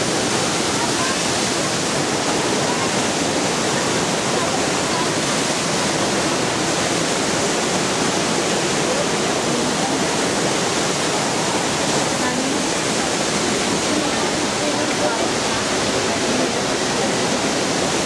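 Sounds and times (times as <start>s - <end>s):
waterfall roaring: 0.0s - 18.0s.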